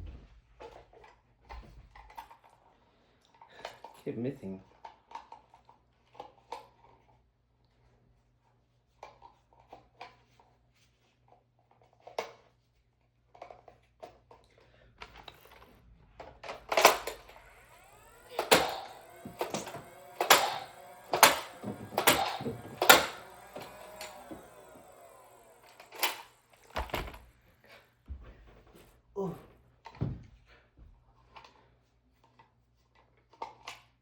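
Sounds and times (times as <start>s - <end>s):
toy blaster sharp shots: 16.4s - 27.1s
toy blaster light clicks: 16.7s - 26.9s.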